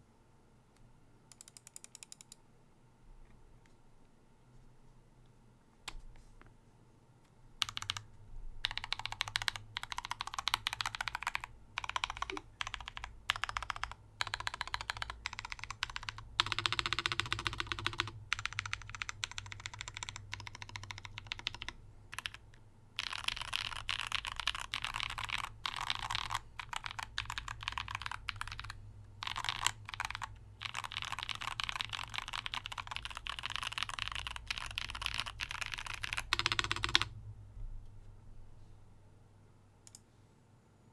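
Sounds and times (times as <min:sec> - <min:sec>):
mechanical keyboard typing: 0:01.3 - 0:02.4, 0:07.6 - 0:37.1.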